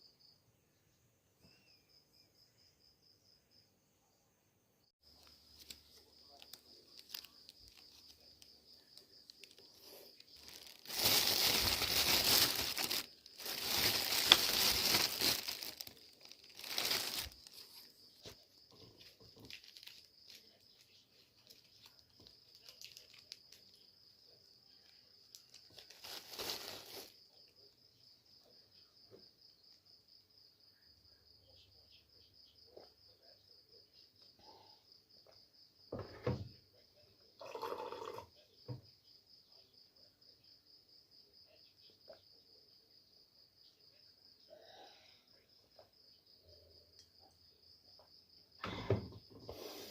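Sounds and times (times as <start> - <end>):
cricket chirping: 0.0 - 49.9
crinkling handling noise: 5.1 - 23.8, 25.3 - 27.2.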